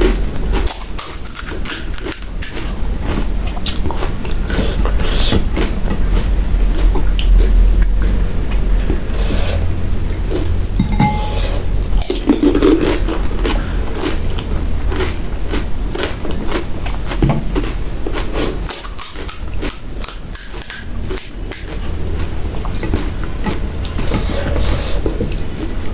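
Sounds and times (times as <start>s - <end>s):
crisp shells crunching and chewing: 0.0s - 10.8s, 11.6s - 24.3s
low hum: 5.7s - 18.1s.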